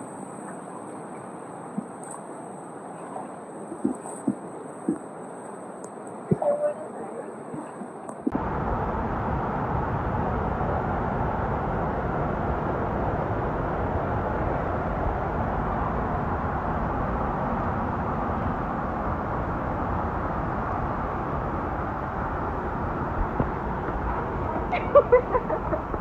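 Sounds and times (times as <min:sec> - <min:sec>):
rushing water: 0:00.0 - 0:08.9.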